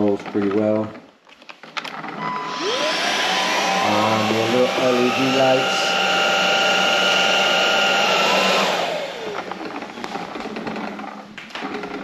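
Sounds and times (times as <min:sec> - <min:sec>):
vacuum motor whining: 0:01.9 - 0:12.0
vacuum motor spinning down: 0:02.2 - 0:11.7.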